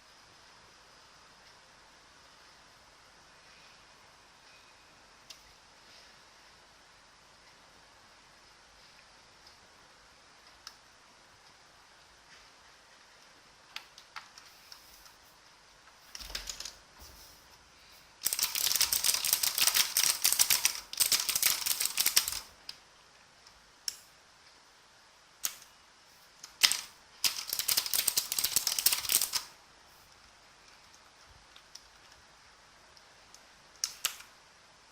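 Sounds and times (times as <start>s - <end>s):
clicky mechanical keyboard typing: 16.1s - 16.8s, 18.2s - 22.5s, 26.4s - 29.5s.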